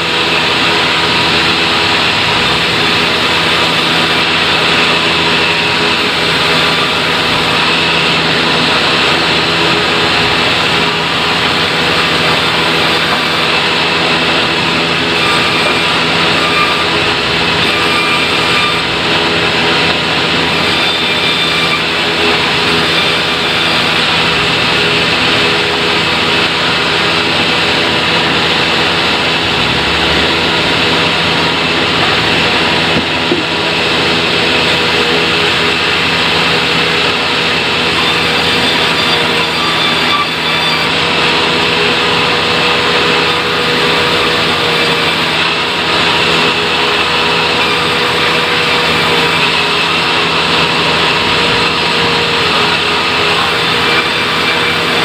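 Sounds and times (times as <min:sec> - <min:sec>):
sawmill machinery droning: 0:00.0 - 0:55.0.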